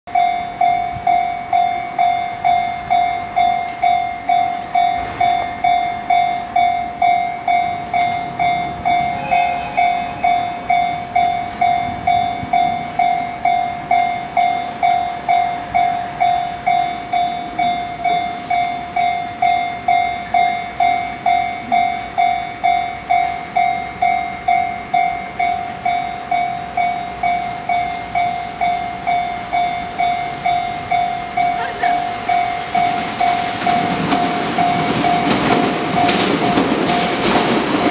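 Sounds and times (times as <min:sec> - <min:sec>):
level crossing bell clanging: 0:00.1 - 0:37.9
brief extra tone: 0:08.9 - 0:10.9.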